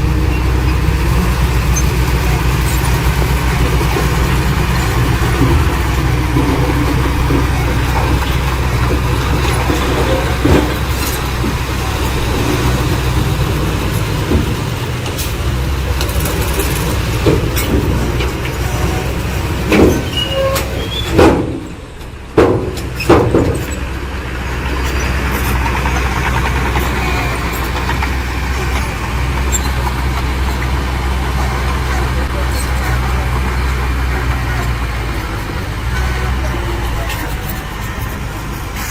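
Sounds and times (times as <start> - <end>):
heavy diesel engine running: 0.0 - 38.9
sharp clanks and knocks: 1.8 - 24.0, 24.8 - 30.8.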